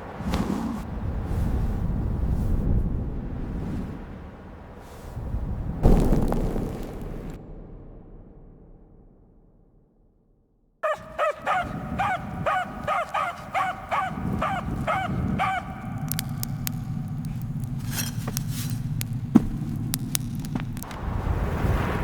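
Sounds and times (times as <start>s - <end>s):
dog barking rapidly: 10.8s - 20.9s
sharp clicks: 10.8s - 21.0s.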